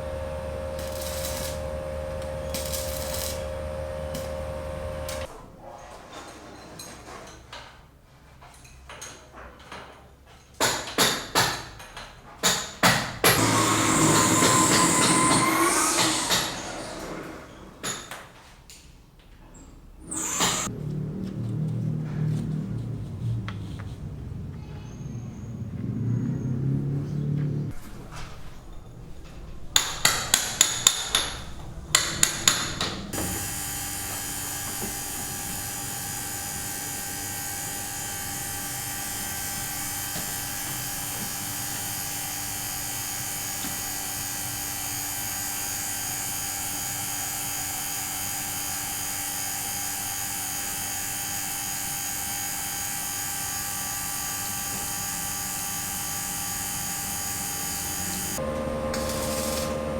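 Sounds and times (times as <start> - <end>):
steady tonal hum: 0.0 - 5.3
hammer blows: 12.9 - 18.1, 27.8 - 35.8.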